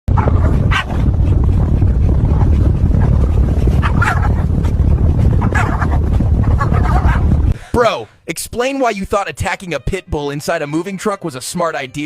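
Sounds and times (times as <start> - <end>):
moving truck rumble: 0.1 - 7.6
wind buffeting: 0.1 - 7.7.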